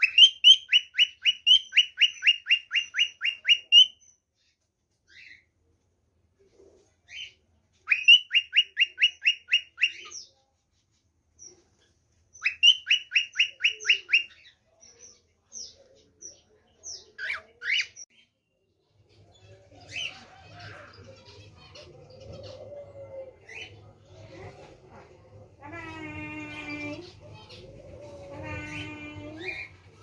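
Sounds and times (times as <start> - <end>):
songbird singing: 12.4 - 18.6.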